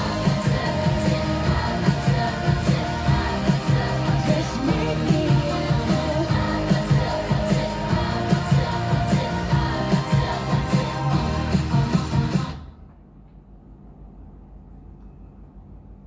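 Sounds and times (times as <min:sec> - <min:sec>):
pop song with singing: 0:00.0 - 0:12.8.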